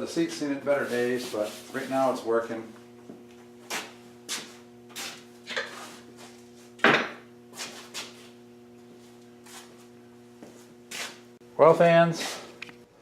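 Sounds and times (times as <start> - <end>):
low electrical hum: 0.0 - 13.0
tools knocking on workbench: 6.8 - 7.2.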